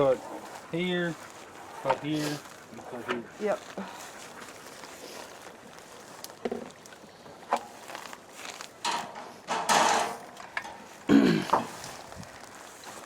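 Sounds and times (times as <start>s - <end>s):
wooden boards knocking and scraping: 8.8s - 10.7s.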